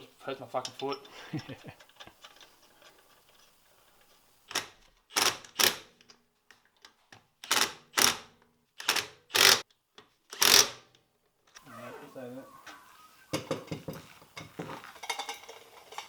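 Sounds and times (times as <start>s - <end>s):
impact wrench bursts: 4.5s - 6.0s, 7.4s - 9.6s, 10.3s - 10.9s.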